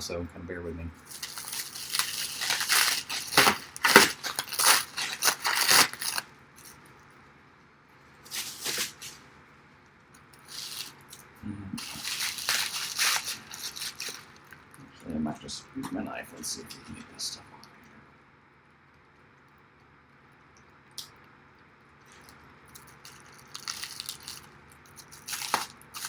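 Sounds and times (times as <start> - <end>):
packing wrap crinkling: 1.0 - 7.0, 8.3 - 9.3, 10.4 - 14.8, 22.1 - 26.0.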